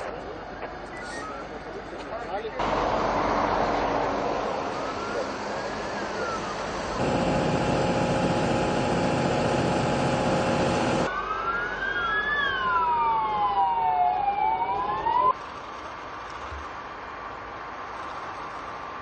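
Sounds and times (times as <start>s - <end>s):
loud mechanical noise: 2.6s - 11.1s
emergency sirens wailing: 4.1s - 15.4s
steady hum: 6.5s - 11.1s.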